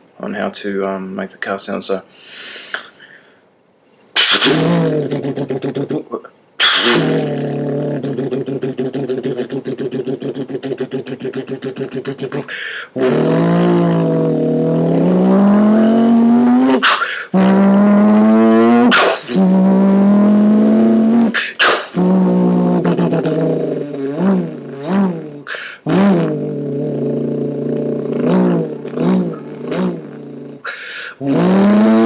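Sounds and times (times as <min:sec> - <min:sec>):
person imitating engine with lips: 0:04.2 - 0:32.0.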